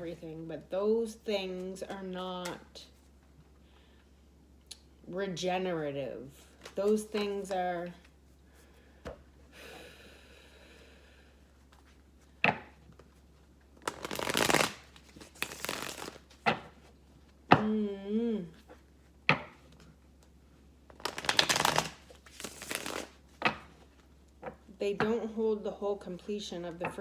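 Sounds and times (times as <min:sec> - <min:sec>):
cards shuffled by hand: 0:12.9 - 0:16.9, 0:20.9 - 0:24.6
person humming: 0:17.6 - 0:18.6.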